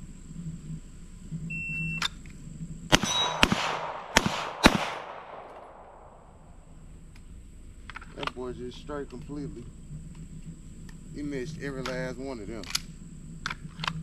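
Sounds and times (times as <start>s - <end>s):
gunshots with echo: 2.9s - 6.5s.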